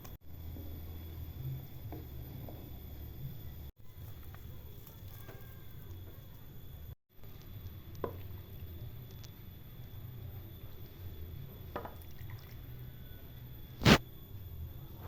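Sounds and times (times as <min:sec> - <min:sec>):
liquid bubbling in pot: 0:00.4 - 0:14.0
sharp loud click: 0:13.8 - 0:14.0.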